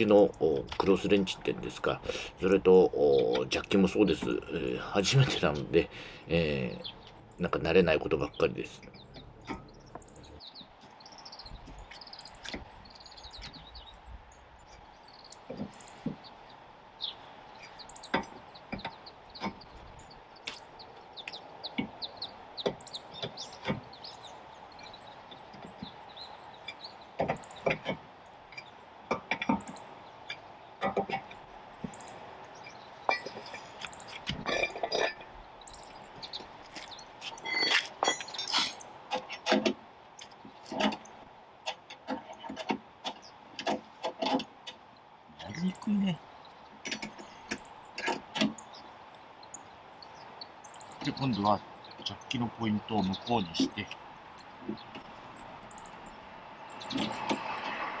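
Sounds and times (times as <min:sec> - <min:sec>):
small birds chirping: 0:00.0 - 0:58.0
hand tools knocking and clinking: 0:33.1 - 0:35.3, 0:37.3 - 0:39.8.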